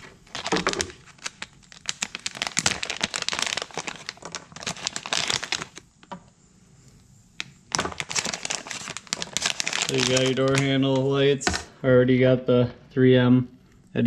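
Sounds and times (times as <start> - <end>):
plastic packaging crinkling: 0.0 - 6.3, 7.4 - 11.7.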